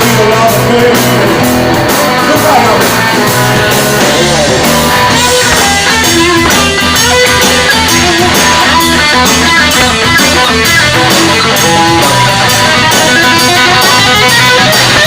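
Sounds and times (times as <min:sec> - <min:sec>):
bass and drums: 0:00.0 - 0:15.0
electric guitar lead: 0:00.0 - 0:15.0.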